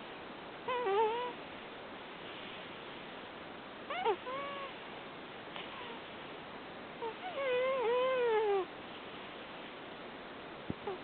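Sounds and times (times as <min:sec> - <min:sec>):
steady background hiss: 0:00.0 - 0:11.0
cat snoring: 0:00.7 - 0:01.4, 0:07.0 - 0:08.7.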